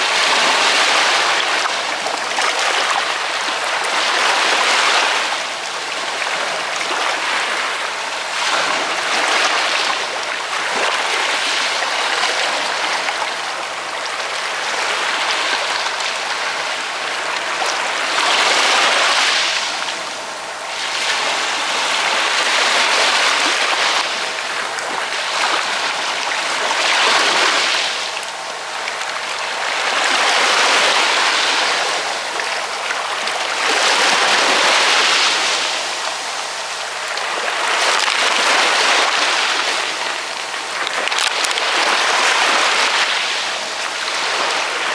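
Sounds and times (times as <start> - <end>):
ocean waves washing ashore: 0.0 - 44.9.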